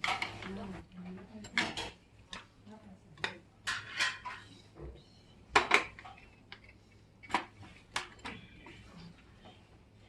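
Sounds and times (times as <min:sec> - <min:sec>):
cutlery clinking against a dish: 0:01.4 - 0:02.5, 0:03.2 - 0:04.6.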